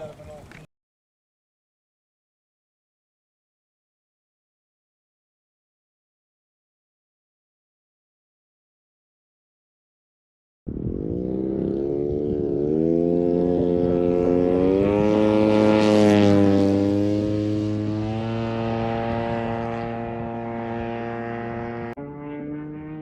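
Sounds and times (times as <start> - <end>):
propeller aircraft engine: 10.7 - 23.0.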